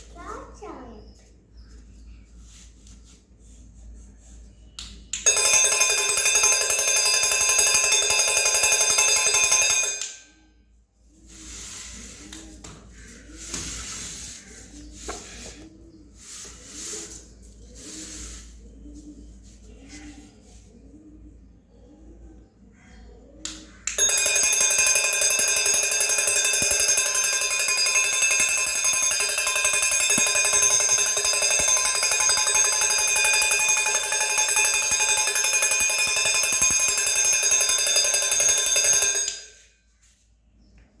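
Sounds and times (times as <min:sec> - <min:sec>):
electric alarm bell ringing: 0:05.2 - 0:10.4, 0:23.8 - 0:39.8.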